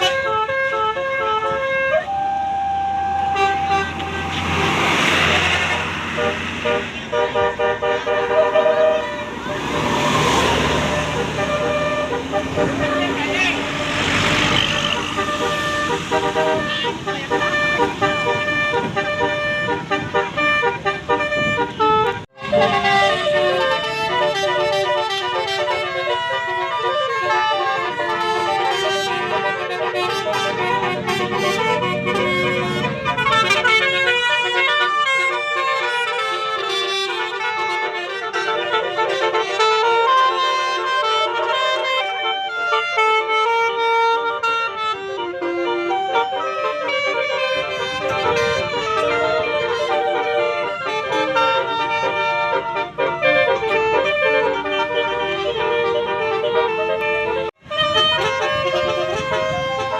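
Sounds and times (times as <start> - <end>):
bus musical horn melody: 0.0 - 59.9
vehicle rumbling past: 1.6 - 59.9.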